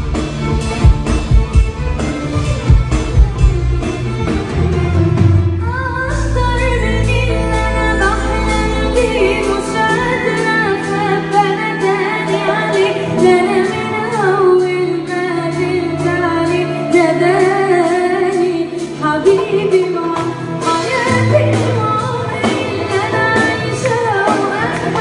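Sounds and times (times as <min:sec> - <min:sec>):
instrumental accompaniment: 0:00.0 - 0:25.0
woman singing: 0:05.5 - 0:25.0.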